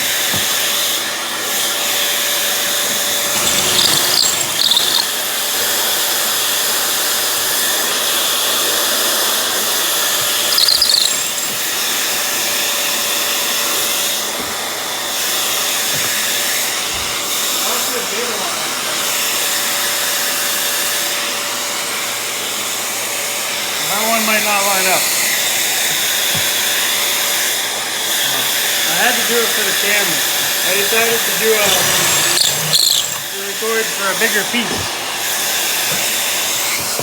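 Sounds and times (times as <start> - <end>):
electric blower motor whining: 2.4 - 5.2, 10.2 - 11.8, 28.9 - 35.1.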